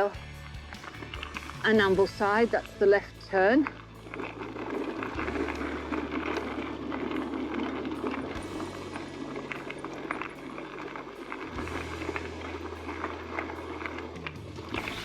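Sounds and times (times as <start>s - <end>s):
bike tyres on gravel: 0.0s - 15.0s
loose stones crunching and rattling: 0.0s - 15.0s.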